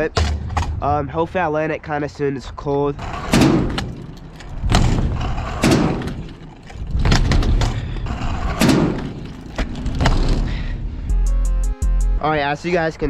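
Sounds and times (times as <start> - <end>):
scooter rolling on concrete: 3.0 - 10.4
scooter landing thuds and clatters: 3.0 - 10.6.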